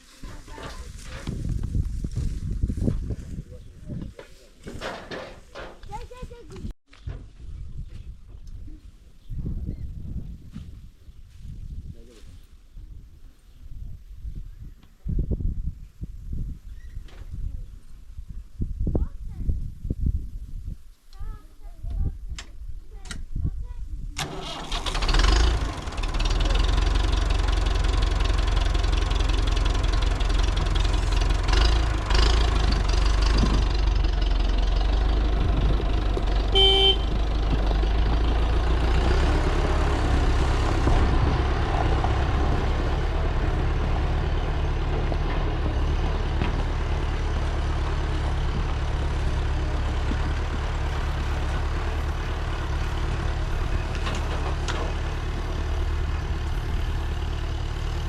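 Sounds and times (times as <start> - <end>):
vehicle engine running: 24.2 - 58.0
car horn toot: 36.5 - 37.2.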